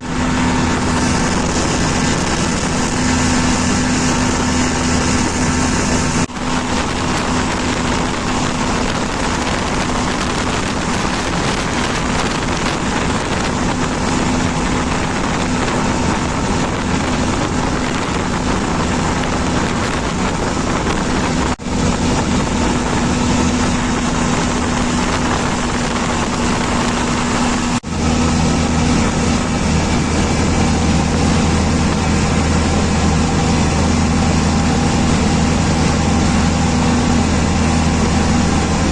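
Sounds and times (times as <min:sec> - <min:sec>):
engine droning: 0:00.0 - 0:38.9
wind noise on microphone: 0:00.0 - 0:38.9.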